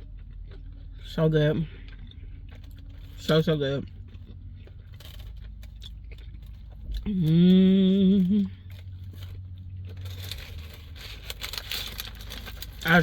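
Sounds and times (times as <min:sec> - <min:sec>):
chewing clicks and crunches: 0:00.0 - 0:13.0
woman humming mmm: 0:07.1 - 0:08.6.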